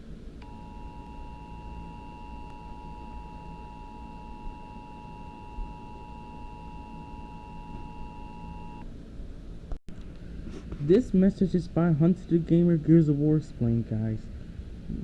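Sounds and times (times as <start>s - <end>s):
two-tone alert signal: 0.4s - 8.8s.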